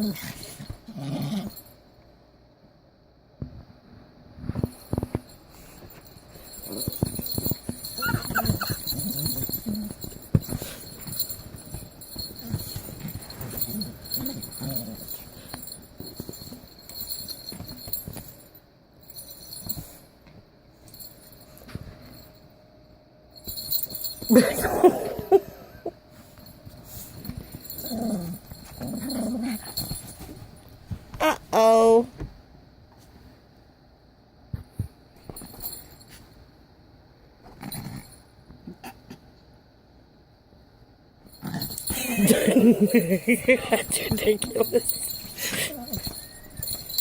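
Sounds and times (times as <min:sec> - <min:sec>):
dog growling: 0:00.0 - 0:01.6, 0:13.5 - 0:15.2, 0:27.8 - 0:29.8
rustling and jingling: 0:04.5 - 0:31.4, 0:35.2 - 0:36.4, 0:41.3 - 0:47.0.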